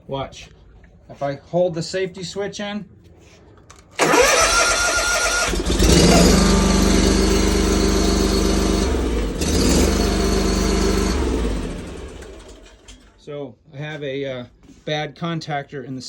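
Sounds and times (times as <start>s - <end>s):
lawn mower engine running: 4.0s - 13.1s
electric starter cranking engine: 4.0s - 13.2s.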